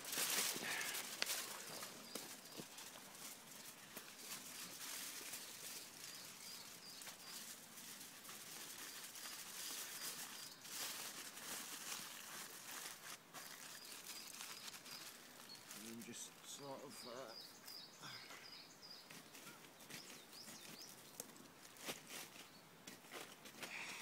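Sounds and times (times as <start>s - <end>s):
bird chirping: 5.3s - 7.5s, 13.4s - 21.3s.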